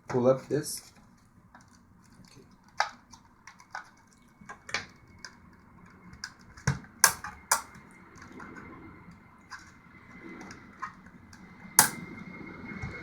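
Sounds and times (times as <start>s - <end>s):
plastic casing clicks and snaps: 0.9s - 8.4s, 11.8s - 12.0s.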